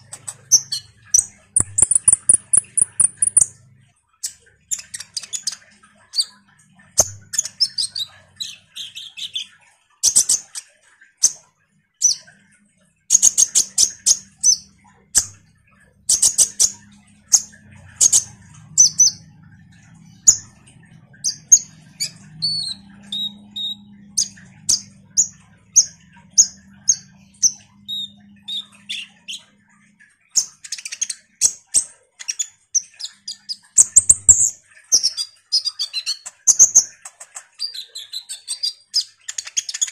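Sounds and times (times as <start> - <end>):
sunbird chirping: 0.0 - 3.6.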